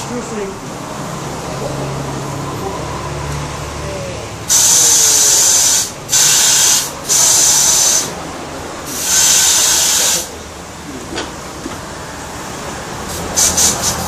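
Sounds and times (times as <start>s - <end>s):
compressed air hissing: 4.5s - 8.2s, 8.8s - 10.4s, 13.0s - 14.0s.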